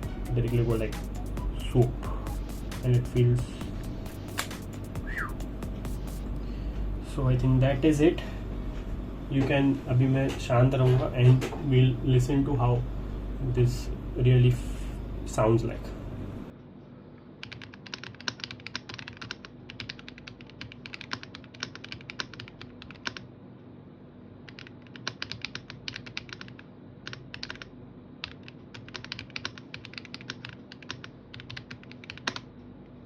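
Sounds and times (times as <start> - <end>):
mechanical keyboard key clicks: 17.4 - 23.2, 24.5 - 32.5.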